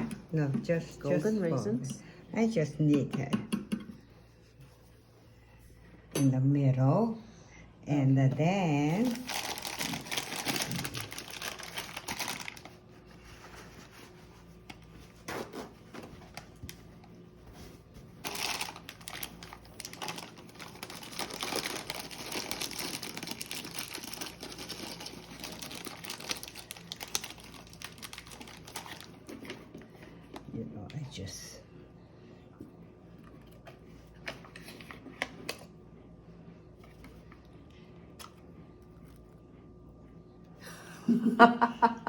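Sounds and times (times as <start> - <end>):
plastic crinkling and rustling: 8.9 - 13.9, 15.8 - 29.9.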